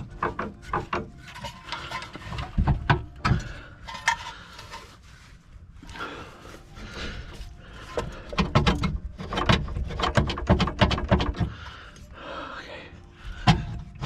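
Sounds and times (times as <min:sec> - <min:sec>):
sharp knocks and clicks: 0:00.0 - 0:01.2, 0:08.3 - 0:11.5.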